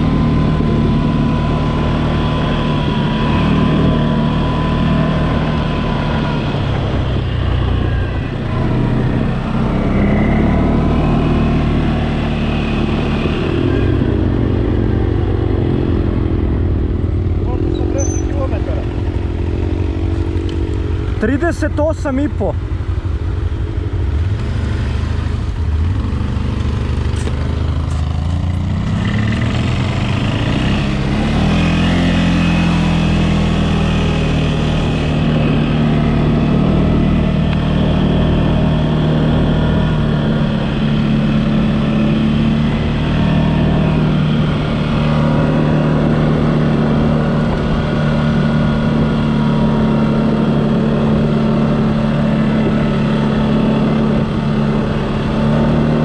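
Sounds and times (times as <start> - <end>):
off-road vehicle engine: 0.0 - 56.0.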